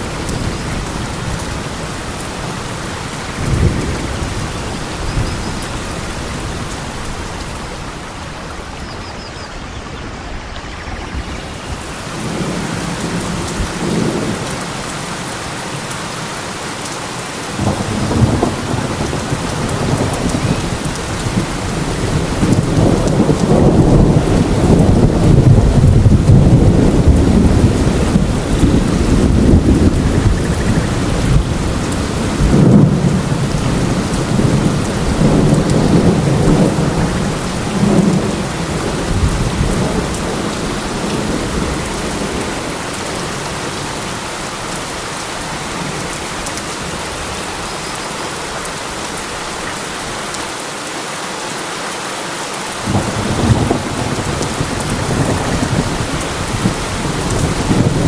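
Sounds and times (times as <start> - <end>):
thunder rumbling: 0.0 - 15.0, 17.5 - 44.1, 52.8 - 58.0
heavy rain: 0.0 - 58.0.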